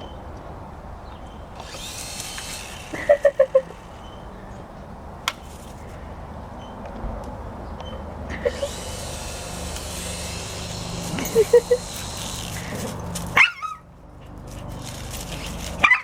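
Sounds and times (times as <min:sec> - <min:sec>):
toy helicopter motor buzzing: 0:01.6 - 0:03.9, 0:08.4 - 0:15.8
sharp click: 0:05.3 - 0:05.9
dog barking: 0:13.4 - 0:13.8.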